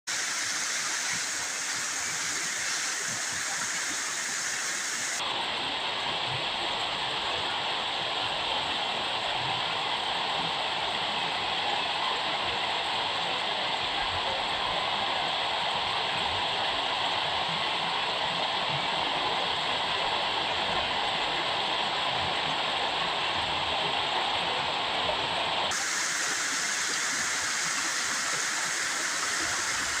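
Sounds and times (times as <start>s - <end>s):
waterfall rushing: 0.1s - 5.2s, 25.7s - 30.0s.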